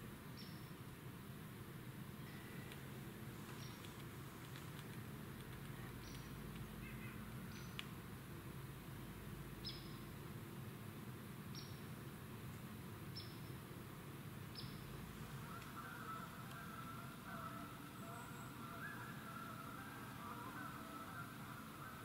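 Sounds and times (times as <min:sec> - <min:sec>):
faint low background hum: 0:00.0 - 0:22.0
small bird chirping: 0:00.4 - 0:00.7, 0:03.5 - 0:04.0, 0:05.8 - 0:07.9, 0:09.6 - 0:10.1, 0:11.5 - 0:11.9, 0:13.1 - 0:13.6, 0:14.5 - 0:19.2.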